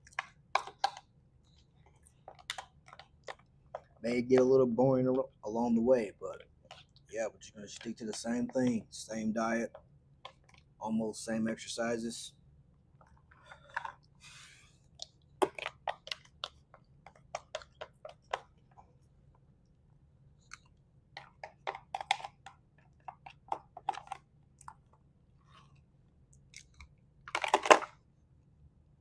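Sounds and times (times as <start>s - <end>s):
person chewing crunchy food: 14.9s - 18.8s.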